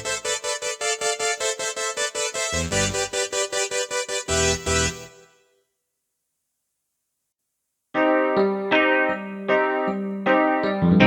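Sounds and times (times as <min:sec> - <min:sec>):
keyboard chord: 0:00.0 - 0:05.1, 0:08.0 - 0:11.0.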